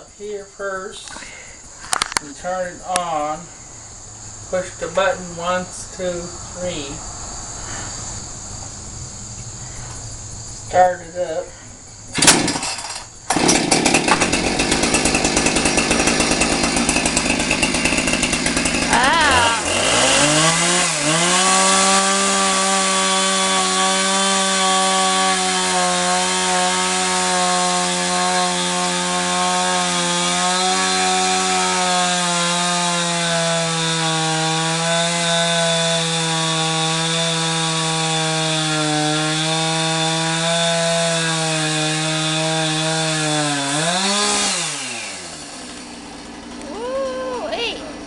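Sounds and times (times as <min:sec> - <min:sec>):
chainsaw running at high revs: 0:12.2 - 0:48.0.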